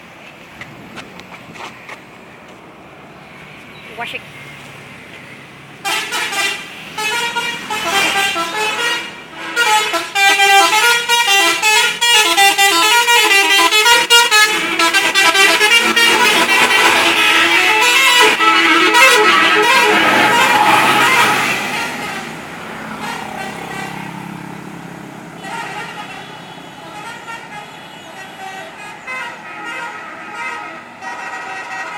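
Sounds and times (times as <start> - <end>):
musical bus horn playing a tune: 5.8 - 24.4, 25.4 - 31.9.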